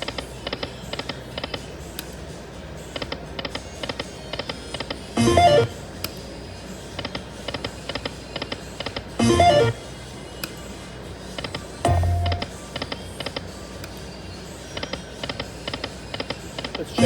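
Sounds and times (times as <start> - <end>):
slot machine reel clicks: 3.0 - 5.8, 7.0 - 9.8, 11.4 - 13.4.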